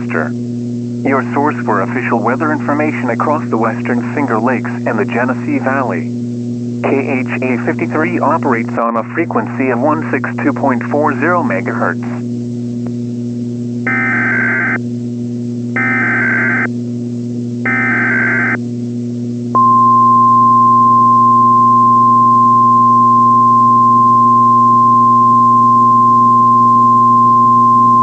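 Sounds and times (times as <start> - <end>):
low steady hum: 0.0 - 28.0
warbling data bursts: 13.9 - 14.8, 15.8 - 16.7.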